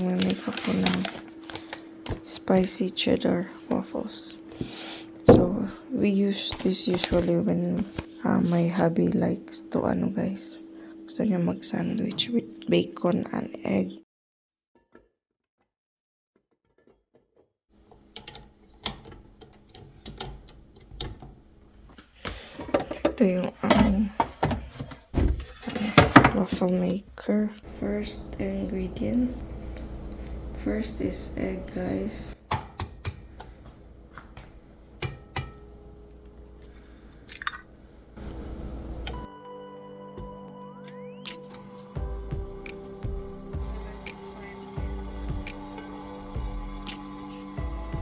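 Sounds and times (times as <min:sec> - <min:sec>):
kitchen items clicking and clattering: 0:00.0 - 0:02.8, 0:22.2 - 0:27.1
low steady hum: 0:00.0 - 0:14.0, 0:22.7 - 0:39.3, 0:41.7 - 0:48.0
background music: 0:38.2 - 0:48.0.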